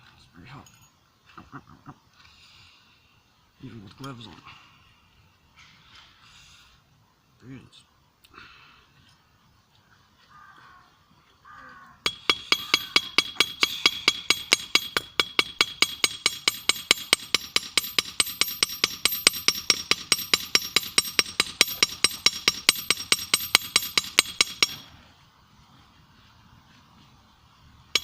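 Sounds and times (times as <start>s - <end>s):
hammer striking steel on anvil: 12.0s - 24.9s.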